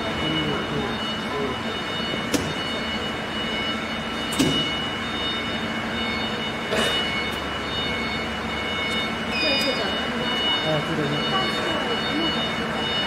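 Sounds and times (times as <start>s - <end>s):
low machine hum: 0.0s - 13.0s
machine high-pitched tones: 0.0s - 13.0s
sharp clicks or knocks: 4.3s - 4.7s.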